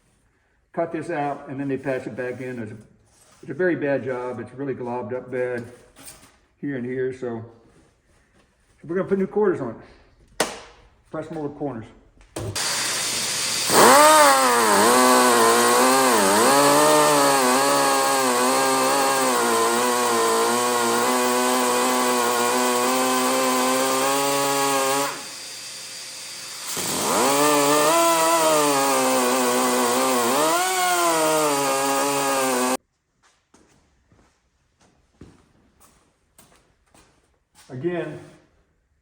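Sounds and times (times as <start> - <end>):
electric cutting tool cutting: 12.6 - 32.8.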